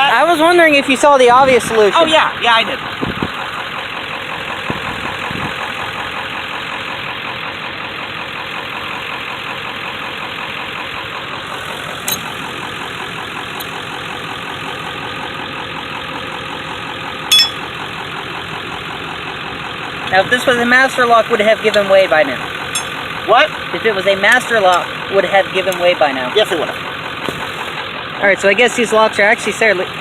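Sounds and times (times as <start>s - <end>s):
vehicle engine idling: 0.0s - 30.0s
sharp ringing knock: 17.3s - 17.6s.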